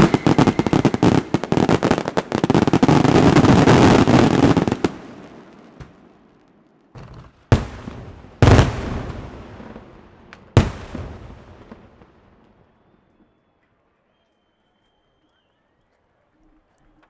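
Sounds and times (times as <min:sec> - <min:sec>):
firework cracks: 0:00.0 - 0:05.2, 0:07.0 - 0:12.6
fireworks bangs: 0:00.0 - 0:13.4.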